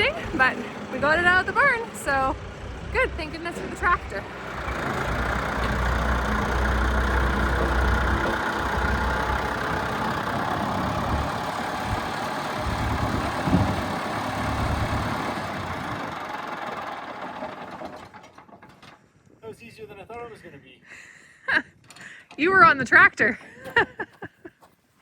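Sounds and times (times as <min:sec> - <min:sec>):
tractor engine running: 0:00.0 - 0:18.8.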